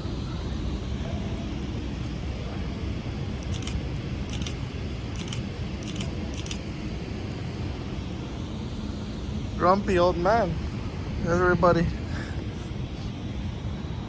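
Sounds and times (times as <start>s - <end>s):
steady low rumble: 0.0s - 14.0s
camera shutter clicking: 3.4s - 4.6s, 5.2s - 6.6s.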